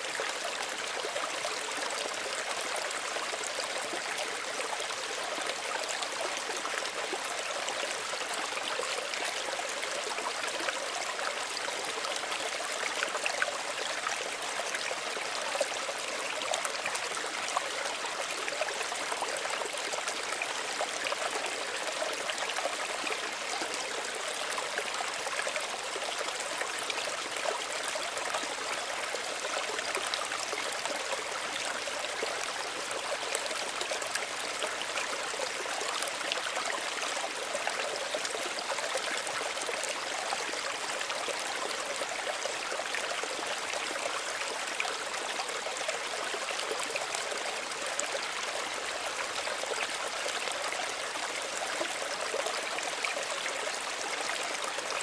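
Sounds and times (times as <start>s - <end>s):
stream trickling and splashing: 0.0s - 55.0s.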